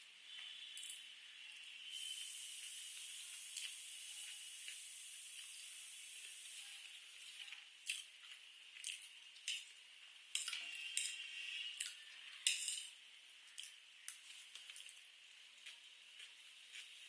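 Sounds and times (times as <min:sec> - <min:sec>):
chewing and mouth clicks: 0:07.4 - 0:09.8, 0:11.8 - 0:12.1, 0:13.5 - 0:15.0, 0:15.6 - 0:17.0.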